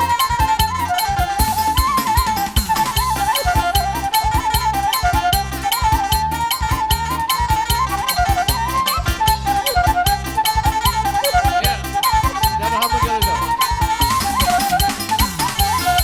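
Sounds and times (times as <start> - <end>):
repeating bass line: 0.0 - 16.0
rhythmic drumming: 0.0 - 16.0
wind instrument melody: 0.0 - 16.0.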